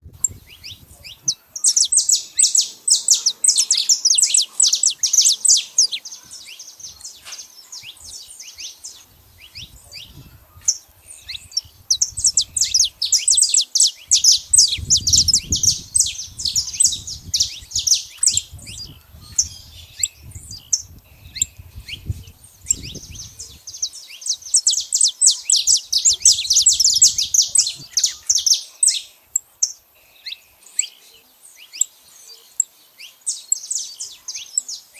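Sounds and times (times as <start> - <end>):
finch rapid high chirping: 0.2 - 8.8, 9.4 - 29.1.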